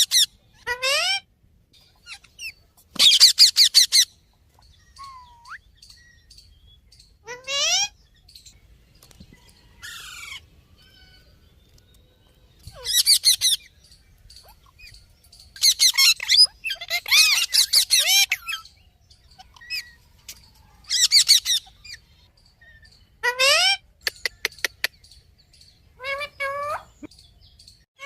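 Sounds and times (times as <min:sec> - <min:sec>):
parrot squawking: 0:00.0 - 0:01.3, 0:02.0 - 0:04.1, 0:05.0 - 0:05.6, 0:07.2 - 0:08.0, 0:12.7 - 0:13.7, 0:15.6 - 0:18.7, 0:20.9 - 0:22.0, 0:23.2 - 0:24.9, 0:26.0 - 0:27.0
parrot chirps: 0:01.9 - 0:04.1, 0:04.9 - 0:06.4, 0:07.2 - 0:08.0, 0:12.7 - 0:20.0, 0:20.8 - 0:25.1.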